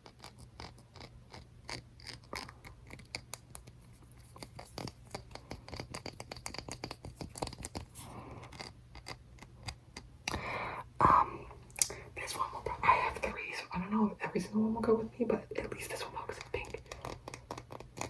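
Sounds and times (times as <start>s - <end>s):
tapping and scratching on trinket: 0.0s - 10.1s, 15.9s - 18.0s.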